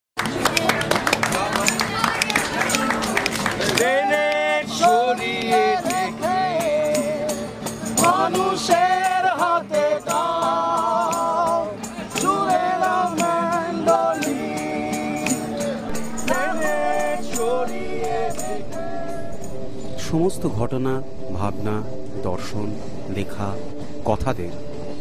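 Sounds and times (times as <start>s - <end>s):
jingling percussion: 1.3s - 20.5s
person singing ornamented melody: 15.9s - 19.9s
steady drone note: 15.9s - 24.9s.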